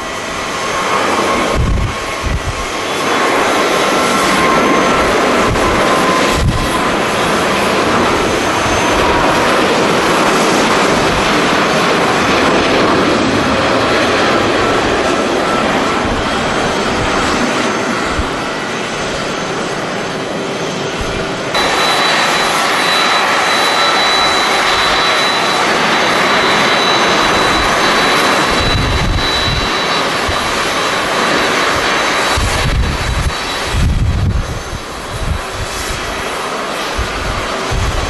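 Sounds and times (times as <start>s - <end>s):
jet engines roaring: 0.0s - 38.0s
wind buffeting microphone: 0.0s - 38.0s
thin high whine: 20.8s - 34.9s.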